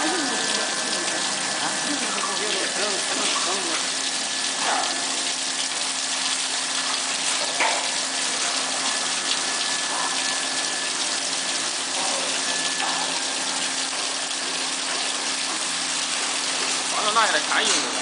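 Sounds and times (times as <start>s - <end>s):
electrical hum: 0.0s - 18.0s
water spraying: 0.0s - 18.0s.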